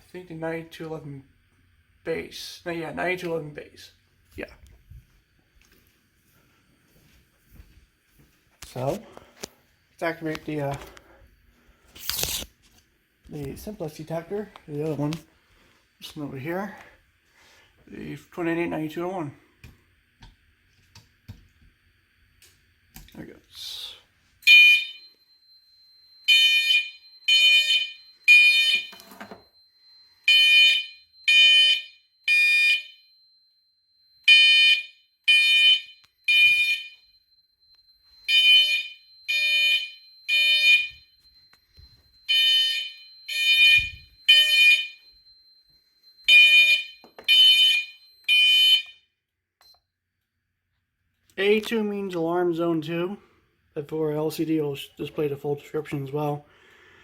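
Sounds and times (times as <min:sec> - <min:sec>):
fire alarm horn blasts: 0:23.5 - 0:49.3.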